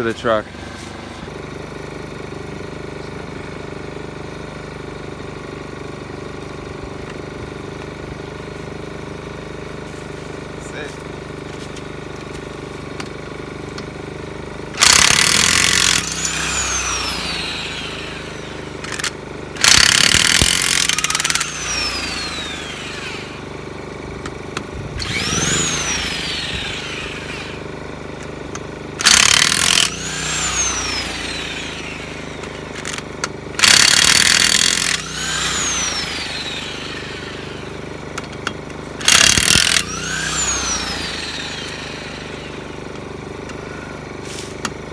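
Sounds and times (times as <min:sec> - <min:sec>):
generator running: 0:00.0 - 0:44.2
impact wrench hammering lug nuts: 0:14.8 - 0:23.5, 0:28.5 - 0:43.1.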